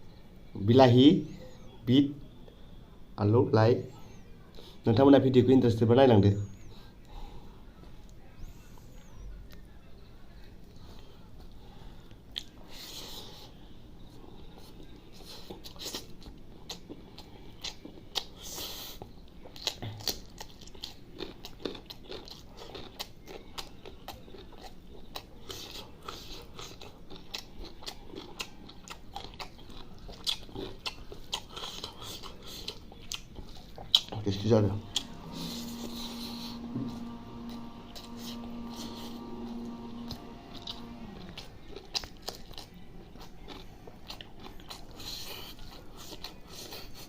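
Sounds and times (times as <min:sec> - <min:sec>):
wet chewing: 0:12.3 - 0:47.0.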